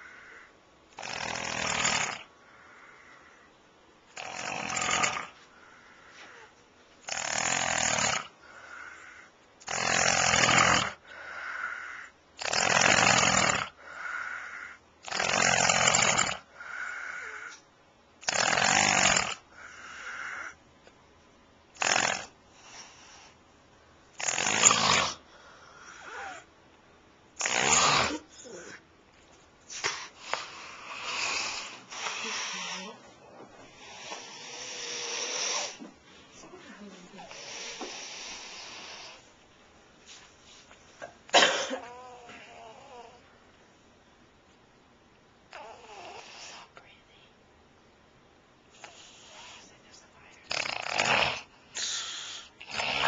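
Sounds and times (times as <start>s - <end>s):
soft breathing: 0.0s - 0.8s, 2.3s - 3.7s, 5.2s - 6.7s, 8.3s - 9.5s, 11.0s - 12.2s, 16.4s - 17.7s, 19.4s - 20.6s, 25.2s - 26.6s, 28.2s - 39.4s, 48.7s - 50.5s, 51.4s - 52.7s
man snoring loudly: 1.0s - 2.3s, 4.2s - 5.3s, 7.1s - 8.3s, 9.6s - 11.0s, 12.4s - 13.8s, 15.0s - 16.5s, 18.2s - 19.4s, 21.8s - 22.4s, 24.2s - 25.2s, 27.4s - 28.8s, 50.5s - 52.0s, 52.6s - 53.0s.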